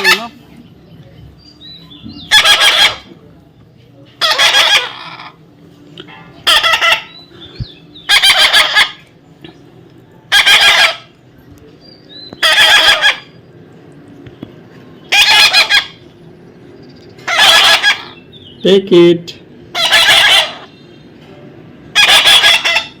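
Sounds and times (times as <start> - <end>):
parrot screeching: 2.3 - 3.1, 4.2 - 5.4, 6.4 - 7.2, 8.0 - 9.0, 10.3 - 11.1, 12.4 - 13.4, 15.1 - 16.0, 17.2 - 18.2, 19.7 - 20.7, 21.9 - 23.0.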